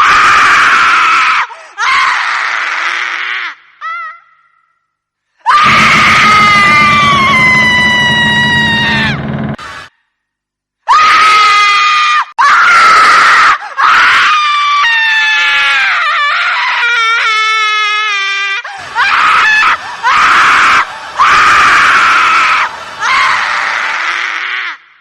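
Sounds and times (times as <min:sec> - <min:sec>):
high piercing screams: 0:05.5 - 0:09.9, 0:18.8 - 0:24.4.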